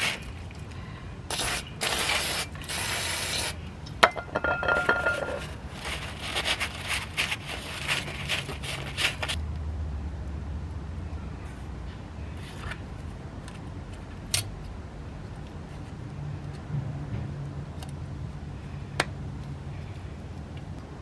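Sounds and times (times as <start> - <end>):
metallic clink: 4.0 - 5.5
rubbing and scraping parts: 4.0 - 9.4.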